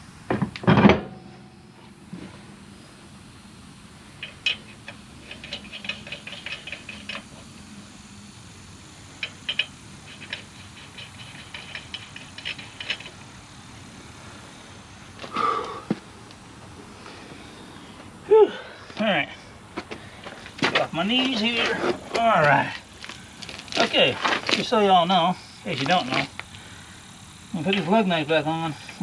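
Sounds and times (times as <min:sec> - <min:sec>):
lug nuts clicking and rattling: 0:04.1 - 0:07.6, 0:09.1 - 0:14.0.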